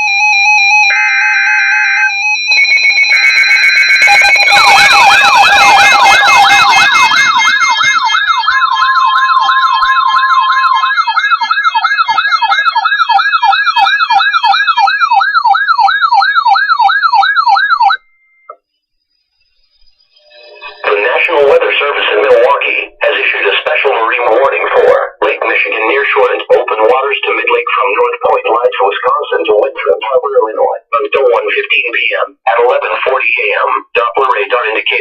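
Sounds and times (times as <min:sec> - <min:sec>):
electronic siren yelps: 0:00.0 - 0:18.6, 0:19.4 - 0:31.0
steady beeping tones: 0:01.9 - 0:35.0.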